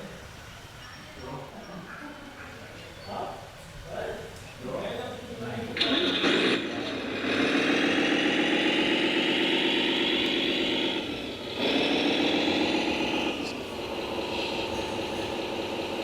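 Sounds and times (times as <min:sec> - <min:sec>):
toy truck motor whirring: 0:05.8 - 0:16.0.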